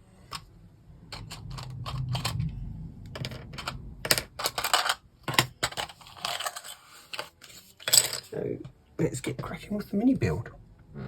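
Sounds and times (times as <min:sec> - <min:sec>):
plastic pieces clicking and clattering: 0:03.1 - 0:08.3.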